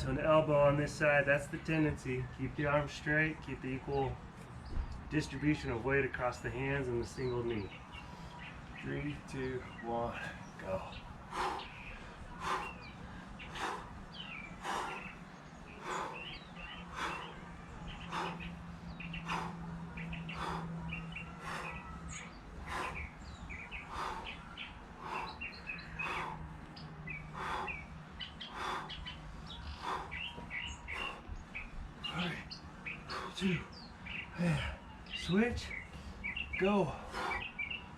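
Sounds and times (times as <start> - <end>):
small birds chirping: 0.0 - 37.9
steady low hum: 1.8 - 37.9.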